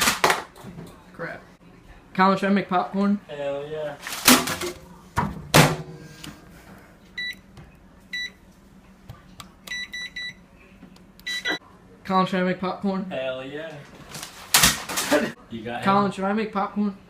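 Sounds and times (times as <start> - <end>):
microwave low hum: 0.4 - 15.5
keypad beeps: 9.7 - 10.4, 11.2 - 11.6.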